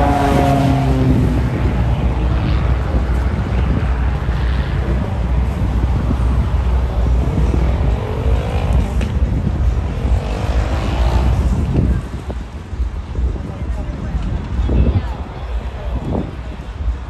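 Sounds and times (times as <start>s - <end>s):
propeller plane engine at high power: 0.0s - 10.0s
wind rumble on microphone: 0.0s - 17.0s.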